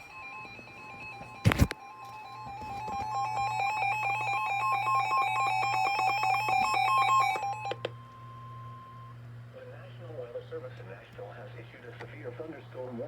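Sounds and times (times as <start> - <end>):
pulsing electronic alarm: 0.0 - 9.2
steady warning tone: 0.0 - 10.1
clicks: 0.4 - 8.3.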